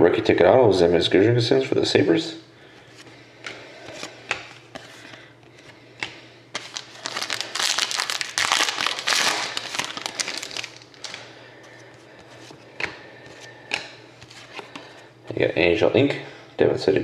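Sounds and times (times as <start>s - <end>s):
wrapper crinkling and tearing: 6.6s - 11.2s.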